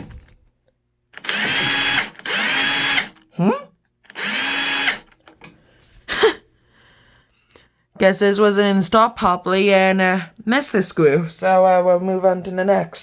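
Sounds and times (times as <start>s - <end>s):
power drill motor whine: 1.2s - 3.2s, 4.1s - 5.2s.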